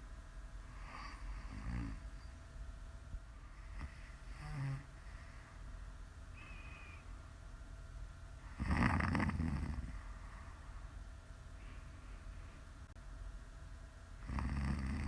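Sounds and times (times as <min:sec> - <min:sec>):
woman snoring: 0:00.8 - 0:02.0, 0:03.8 - 0:04.9, 0:08.5 - 0:10.0, 0:14.2 - 0:15.0
faint high whistle: 0:06.3 - 0:07.1.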